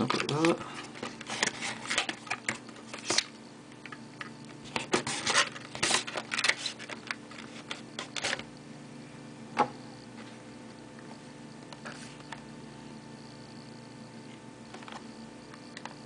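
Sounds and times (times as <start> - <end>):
packaging clicks and rustling: 0.0 - 8.4.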